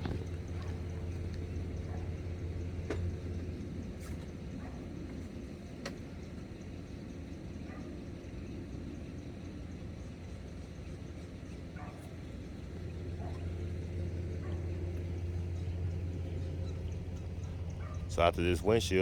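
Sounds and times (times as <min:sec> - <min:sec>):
low engine hum: 0:00.0 - 0:19.0.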